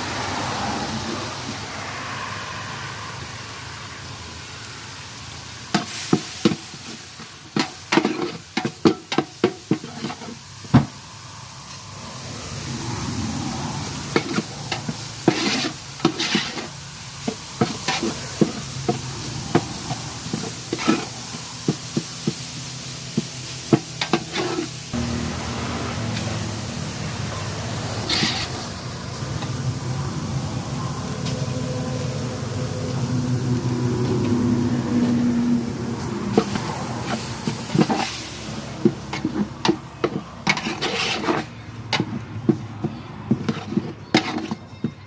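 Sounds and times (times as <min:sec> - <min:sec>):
food sizzling in a pan: 0:00.0 - 0:44.8
utensil knocking and scraping pan: 0:05.8 - 0:11.0, 0:14.1 - 0:22.4, 0:23.1 - 0:24.8, 0:28.1 - 0:28.5, 0:36.3 - 0:45.0.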